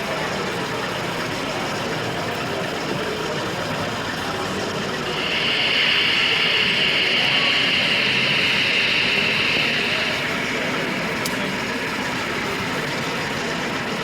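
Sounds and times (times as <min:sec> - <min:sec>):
hall background noise: 0:00.0 - 0:14.0
model train whirring: 0:00.0 - 0:14.0.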